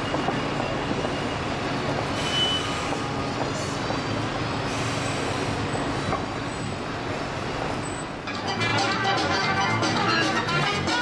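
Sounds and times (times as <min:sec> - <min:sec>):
city traffic noise: 0:00.0 - 0:11.0
heavy vehicle engine running: 0:00.0 - 0:11.0
brief high squeal: 0:02.1 - 0:03.0.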